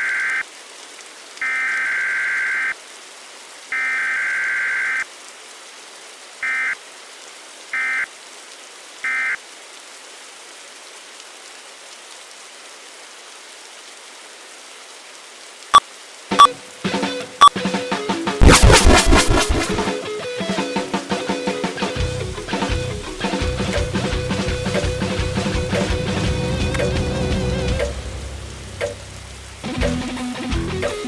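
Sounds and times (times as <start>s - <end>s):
electronic buzzer tone: 18.4s - 19.9s
short beeps: 18.4s - 19.9s.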